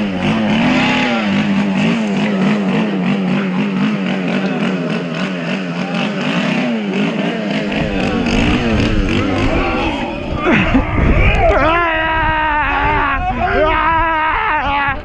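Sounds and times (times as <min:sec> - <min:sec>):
engine running steadily: 0:00.0 - 0:11.8.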